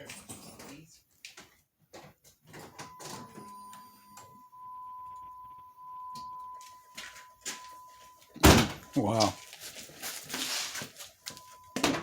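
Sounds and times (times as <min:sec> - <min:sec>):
vehicle warning beep: 0:02.6 - 0:09.6, 0:10.4 - 0:12.0.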